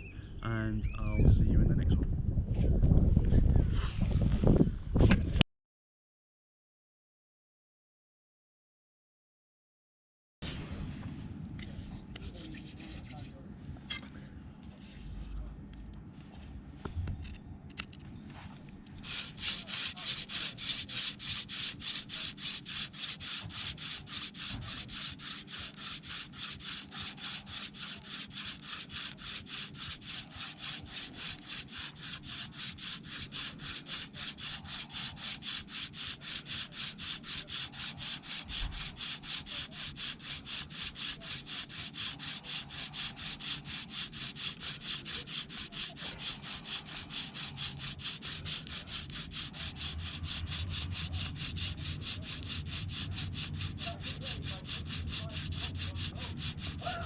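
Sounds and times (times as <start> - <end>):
wooden spindle scraping on wood: 12.2 - 13.4, 19.0 - 57.0.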